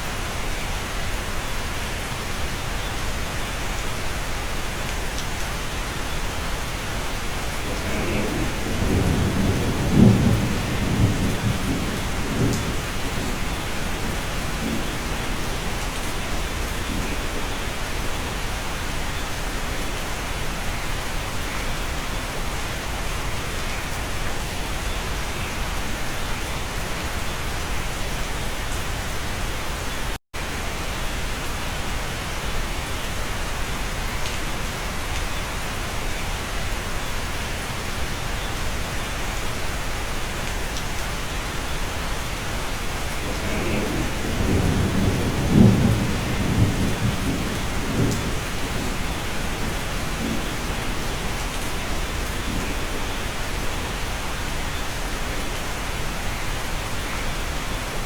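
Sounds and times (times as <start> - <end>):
steady rain: 0.0 - 58.0
low rumble of thunder: 7.2 - 18.8, 42.7 - 54.6.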